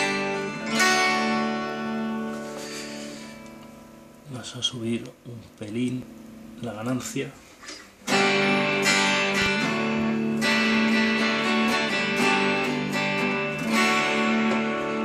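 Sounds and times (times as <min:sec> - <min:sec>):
overdriven electric guitar chords: 0:00.0 - 0:04.3, 0:08.0 - 0:15.0.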